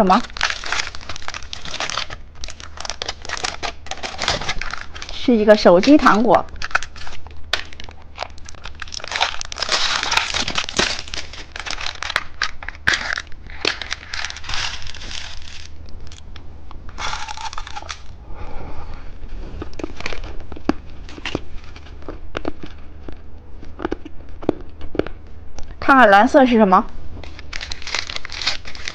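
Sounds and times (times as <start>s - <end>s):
plastic packaging crinkling and tearing: 0.0s - 16.2s, 17.0s - 18.2s, 19.6s - 22.8s, 27.2s - 28.9s.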